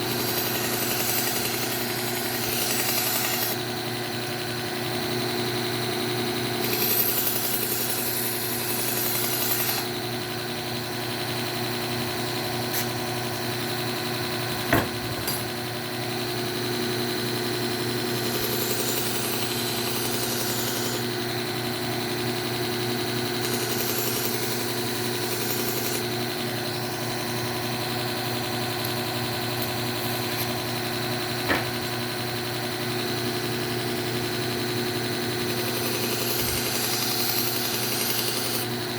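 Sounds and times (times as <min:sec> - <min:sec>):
electric belt sharpener running: 0:00.0 - 0:38.9.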